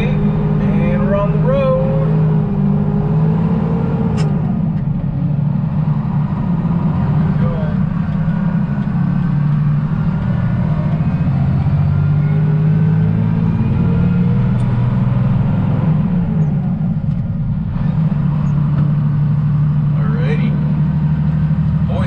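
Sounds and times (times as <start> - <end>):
truck engine running: 0.0 - 22.0.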